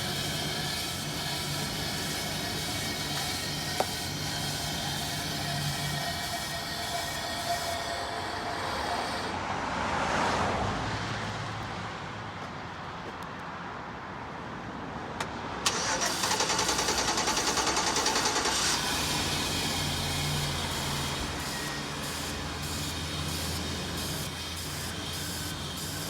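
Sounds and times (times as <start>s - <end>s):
engine cranking by starter: 0.0s - 9.3s, 15.6s - 26.0s.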